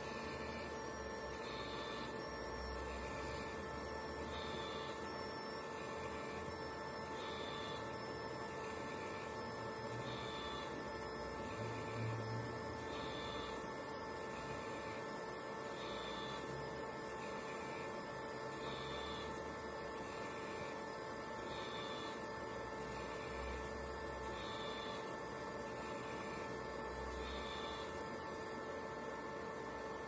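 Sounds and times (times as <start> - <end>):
steady electrical hum: 0.0 - 30.0.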